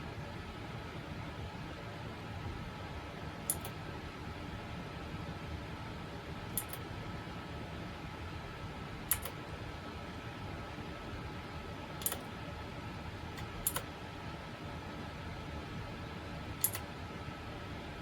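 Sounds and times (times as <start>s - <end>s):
faint steady hum: 0.0s - 18.0s
mechanical keyboard key clicks: 3.5s - 3.8s, 6.6s - 6.8s, 9.1s - 9.4s, 12.0s - 12.3s, 13.4s - 13.9s, 16.6s - 16.9s.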